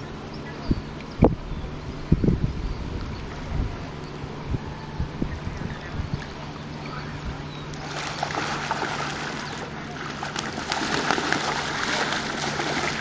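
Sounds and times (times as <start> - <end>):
water splashing and trickling: 7.7 - 13.0.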